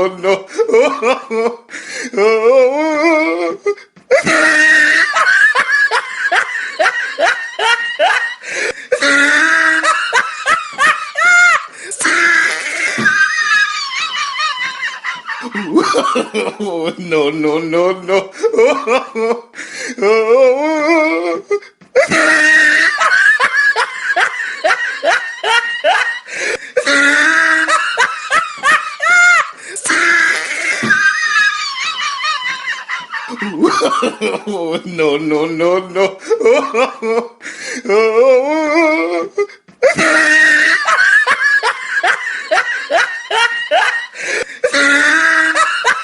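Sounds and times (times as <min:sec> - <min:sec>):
high-pitched laughter: 0:03.0 - 0:08.4, 0:09.0 - 0:16.7, 0:20.6 - 0:34.5, 0:38.5 - 0:46.0.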